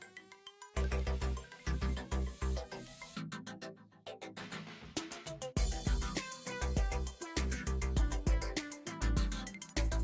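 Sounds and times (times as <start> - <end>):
kick drum beat: 5.6 - 10.0.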